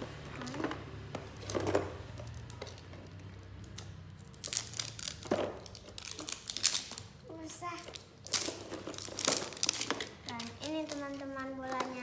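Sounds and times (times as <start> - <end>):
plastic wrapping crinkling: 4.2 - 12.0.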